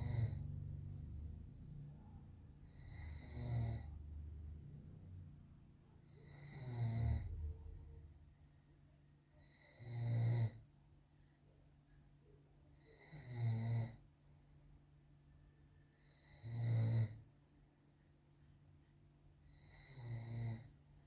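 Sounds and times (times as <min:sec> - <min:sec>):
man snoring: 0:00.0 - 0:00.6, 0:02.7 - 0:04.0, 0:06.1 - 0:07.5, 0:09.4 - 0:10.6, 0:12.8 - 0:14.0, 0:16.0 - 0:17.2, 0:19.5 - 0:20.7.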